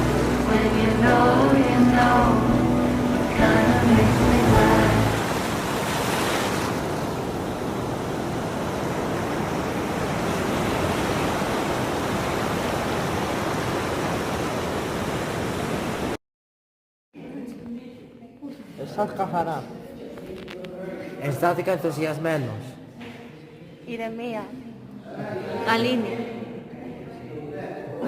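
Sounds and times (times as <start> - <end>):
sea waves washing on shore: 0.0 - 16.2.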